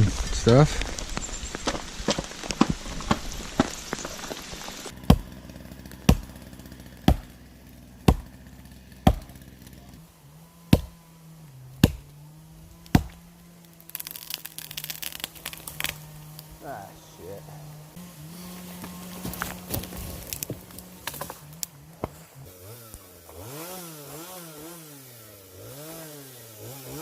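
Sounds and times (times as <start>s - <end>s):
axe chopping wood: 1.6s - 9.8s, 10.7s - 11.1s, 11.7s - 12.2s, 12.8s - 16.5s, 18.6s - 24.8s.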